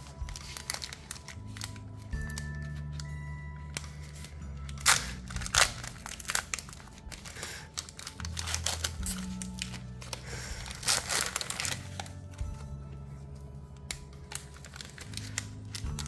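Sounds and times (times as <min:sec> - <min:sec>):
background music: 0:00.0 - 0:16.0
foil wrapper crinkling and tearing: 0:00.0 - 0:16.0.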